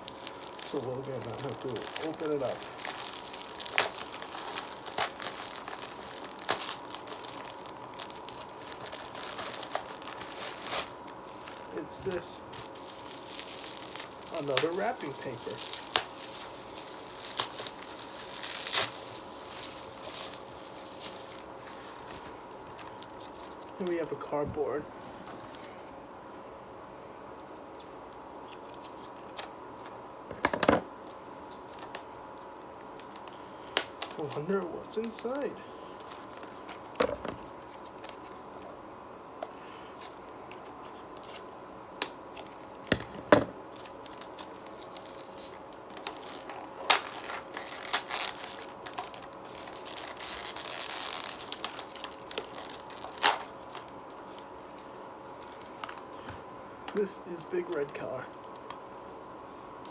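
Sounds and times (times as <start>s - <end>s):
wrapping paper rustling and tearing: 0.0s - 24.2s, 31.5s - 35.4s, 36.0s - 38.6s, 43.7s - 56.3s.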